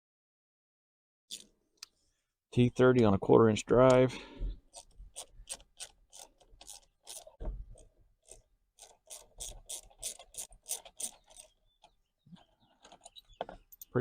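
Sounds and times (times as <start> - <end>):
ratchet clicking: 4.7 - 11.5.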